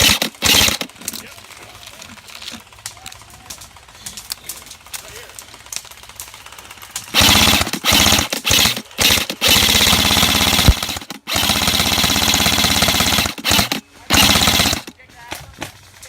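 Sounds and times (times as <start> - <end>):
airsoft gun firing bursts: 0.0 - 1.0, 7.1 - 15.0.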